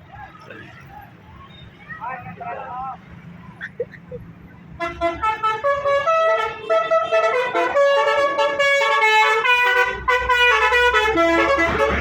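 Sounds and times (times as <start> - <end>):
multi-tone bus horn melody: 4.7 - 12.0.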